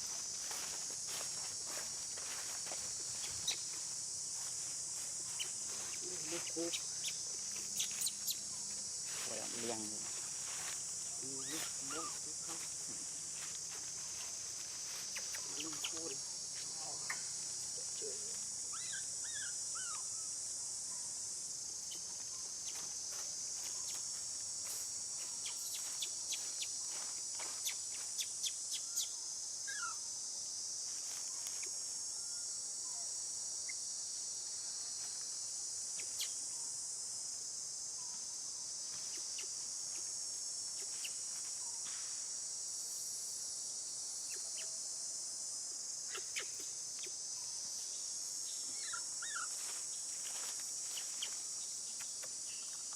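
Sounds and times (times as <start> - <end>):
high-pitched insect chorus: 0.0 - 52.9.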